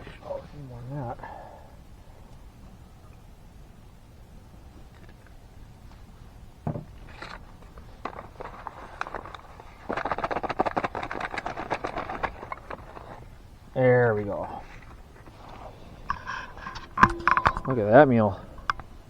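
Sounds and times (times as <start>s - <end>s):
utensils clicking and rattling: 8.0s - 13.2s.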